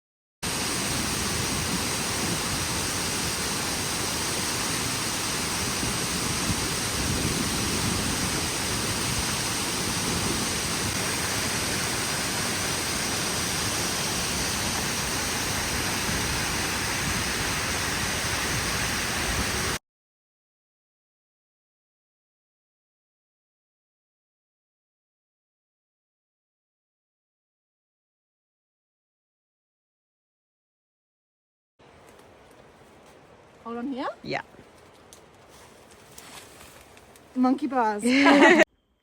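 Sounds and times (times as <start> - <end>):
waterfall rushing: 0.4 - 19.8.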